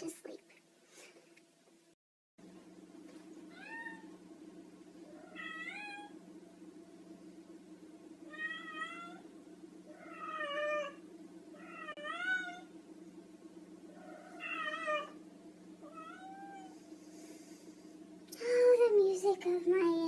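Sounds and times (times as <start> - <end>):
steady low hum: 0.0 - 20.0
cat meowing and yowling: 5.2 - 6.1, 10.0 - 11.0, 11.6 - 12.7, 15.9 - 16.7.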